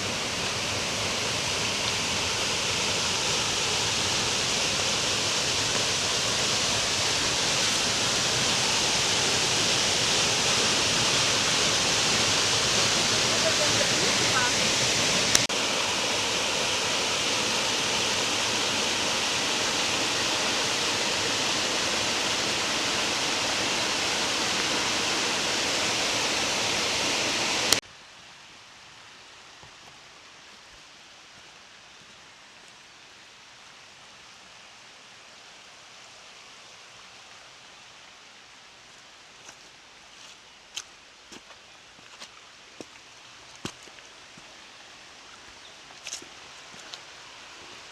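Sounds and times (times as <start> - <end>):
waterfall rushing: 0.0 - 27.8
faint outdoor hiss: 0.0 - 47.9.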